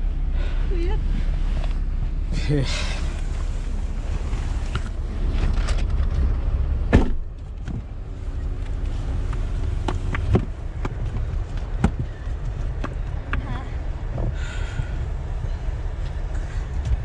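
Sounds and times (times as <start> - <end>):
car road and engine rumble: 0.0 - 17.0
sharp thump: 6.9 - 7.3.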